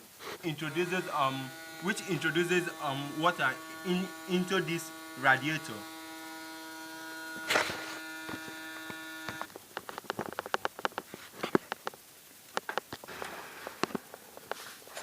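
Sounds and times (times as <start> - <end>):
electric water pump humming: 0.0 - 9.6
sharp crackles and ticks: 8.9 - 13.1.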